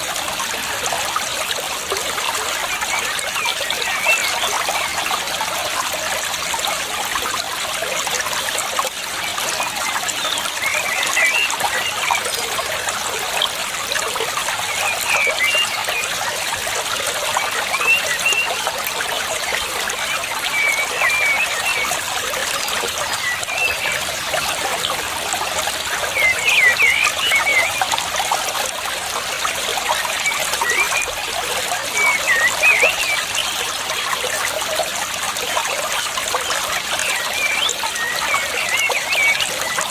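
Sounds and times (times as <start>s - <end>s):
water trickling: 0.0s - 39.9s
bird chirps: 20.0s - 22.0s, 26.1s - 27.9s, 31.8s - 33.6s.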